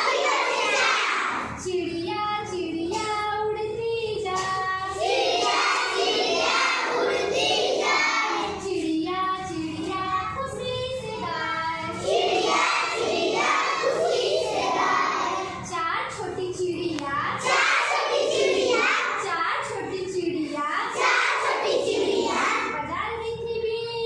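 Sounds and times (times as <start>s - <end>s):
children chanting: 0.0s - 1.6s, 4.9s - 8.7s, 11.3s - 15.6s, 17.4s - 19.3s, 20.9s - 22.8s
children singing: 0.0s - 1.6s, 4.8s - 8.9s, 10.9s - 15.6s, 17.4s - 19.3s, 20.9s - 22.8s.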